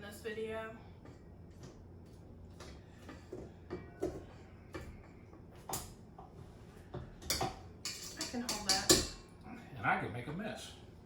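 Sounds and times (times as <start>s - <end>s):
utensil tapping mixing bowl: 6.9s - 9.2s.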